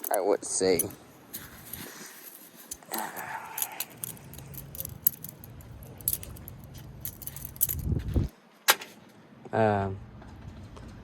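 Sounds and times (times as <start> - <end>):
butterfly knife clicking and rattling: 0.0 - 8.0.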